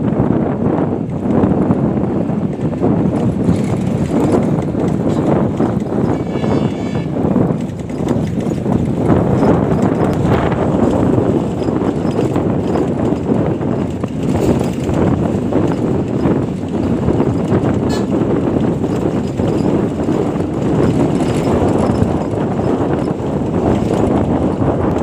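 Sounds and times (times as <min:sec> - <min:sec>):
vehicle rumbling over rough road: 0:00.0 - 0:25.0.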